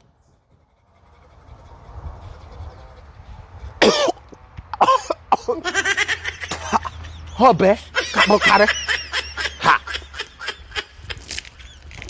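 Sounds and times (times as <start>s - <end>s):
person coughing: 3.8s - 5.8s, 6.4s - 10.0s.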